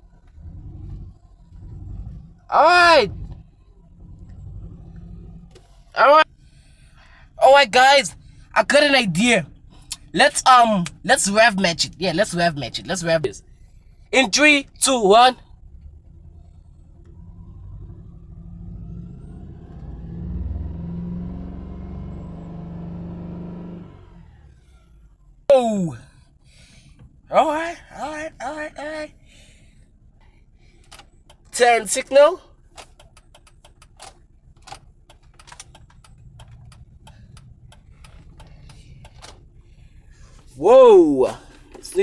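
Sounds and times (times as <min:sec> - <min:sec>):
car engine revving: 0:00.0 - 0:07.4, 0:15.5 - 0:25.2, 0:32.8 - 0:42.0
turn signal ticking: 0:00.0 - 0:24.1, 0:29.8 - 0:42.0.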